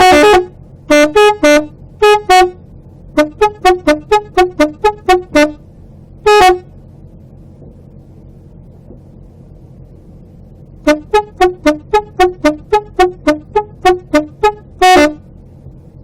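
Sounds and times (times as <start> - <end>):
tractor air horn toots: 0.0 - 6.8, 10.8 - 15.3.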